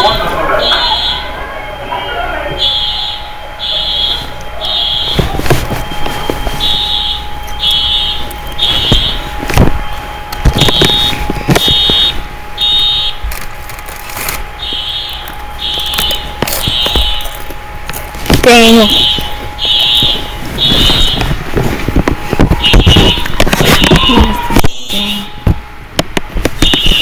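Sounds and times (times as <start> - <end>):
fire alarm blasts: 0.0 - 27.0
thumps and knocks: 5.0 - 12.2, 13.3 - 24.7.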